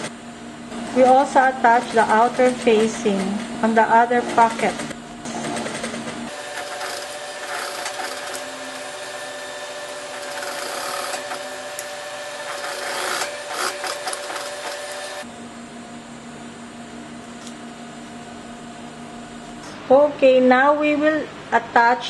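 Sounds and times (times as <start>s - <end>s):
sewing machine stitching: 4.2s - 15.2s.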